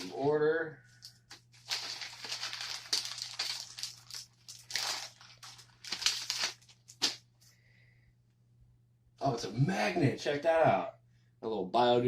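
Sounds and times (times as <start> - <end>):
packing material crinkling: 1.0 - 7.3
steady low hum: 6.6 - 12.0.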